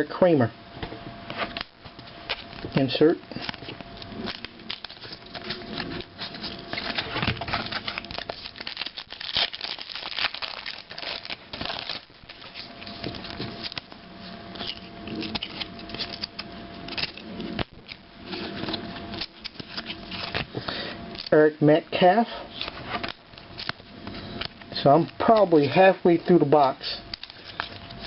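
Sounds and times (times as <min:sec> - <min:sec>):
trading cards being flipped: 0:01.3 - 0:20.6, 0:26.6 - 0:28.0.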